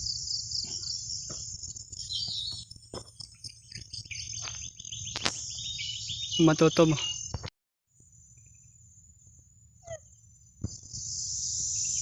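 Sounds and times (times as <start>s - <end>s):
bird chirping: 0.0s - 7.5s
insects trilling: 0.0s - 12.0s.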